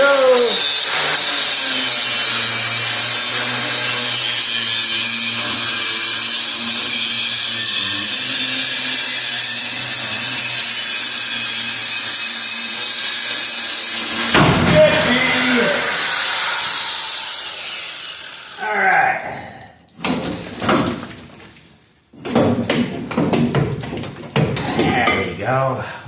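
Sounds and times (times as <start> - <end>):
angle grinder cutting metal: 0.0 - 19.0.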